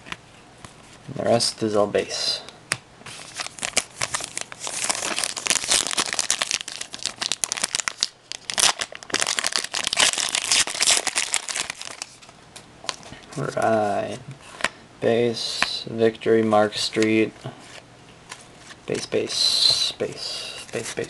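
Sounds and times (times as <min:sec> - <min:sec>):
plastic wrapper crinkling and tearing: 0:03.1 - 0:12.3.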